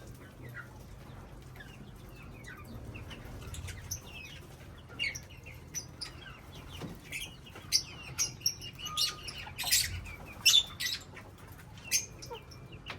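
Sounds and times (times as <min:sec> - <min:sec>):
parrots chirping: 0:03.4 - 0:11.2.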